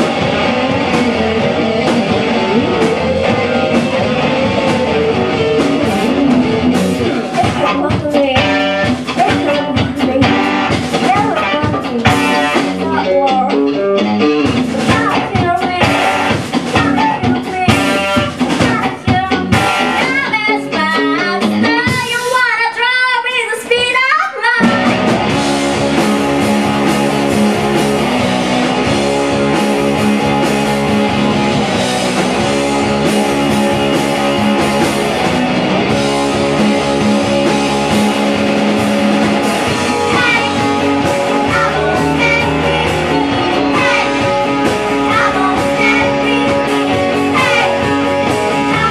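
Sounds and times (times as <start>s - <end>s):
rock band playing: 0.0s - 48.9s
person singing: 7.0s - 13.8s, 14.7s - 22.6s, 39.8s - 48.9s.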